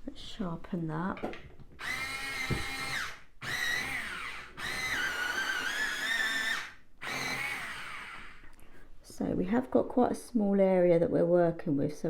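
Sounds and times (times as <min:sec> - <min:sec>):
electric pencil sharpener whine: 0:01.8 - 0:08.4.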